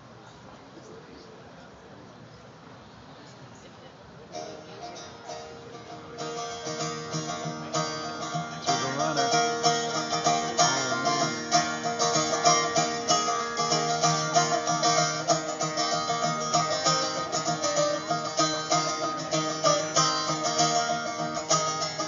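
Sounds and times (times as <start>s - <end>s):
acoustic string instrument strummed: 4.2s - 22.0s
person singing: 8.6s - 13.6s.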